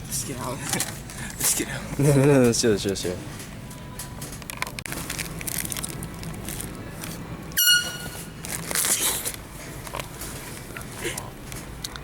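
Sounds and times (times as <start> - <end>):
air horn blast: 7.6 - 8.4.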